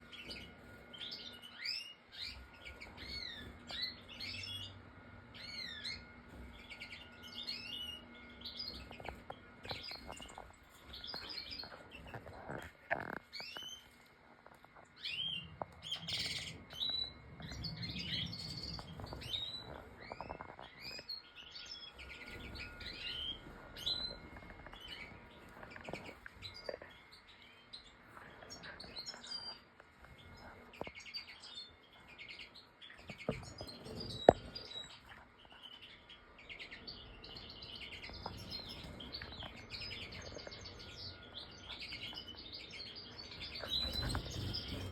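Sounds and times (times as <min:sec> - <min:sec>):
goldfinch singing: 0:15.0 - 0:29.6, 0:30.2 - 0:44.9.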